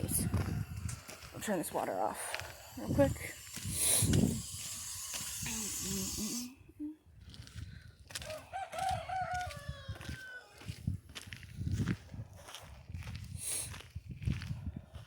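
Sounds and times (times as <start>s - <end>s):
water running from hose: 0.0s - 6.5s
rooster crowing: 8.2s - 10.7s.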